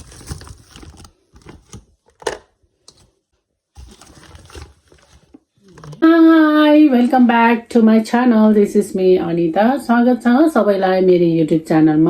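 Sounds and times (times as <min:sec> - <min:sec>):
rustling and crinkling: 0:00.0 - 0:06.2.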